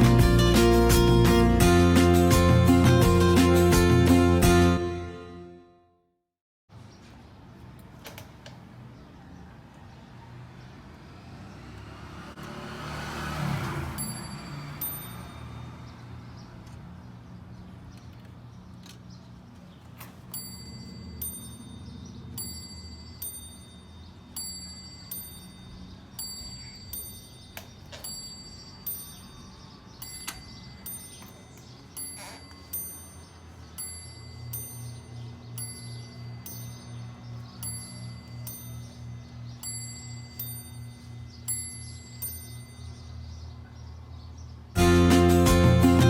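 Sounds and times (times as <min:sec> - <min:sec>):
mantel clock bell striking: 0:14.0 - 0:15.6, 0:20.3 - 0:43.4.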